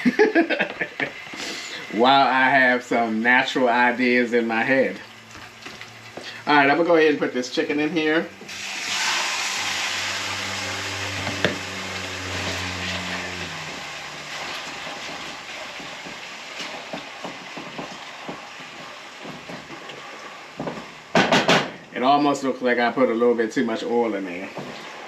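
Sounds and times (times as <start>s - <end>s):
chicken sizzling in hot oil: 0.1s - 21.2s, 23.6s - 25.0s
low hum: 3.0s - 15.9s
oil popping and ticking: 5.0s - 6.4s, 8.4s - 21.4s.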